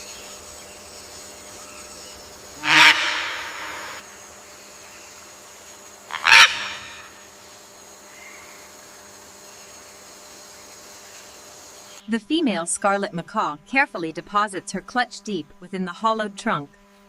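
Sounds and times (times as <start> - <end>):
macaw squawking: 2.6 - 4.0, 6.1 - 7.2.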